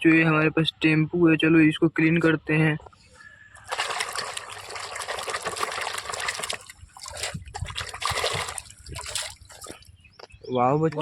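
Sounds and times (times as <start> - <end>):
water gushing and splashing: 3.6 - 9.9.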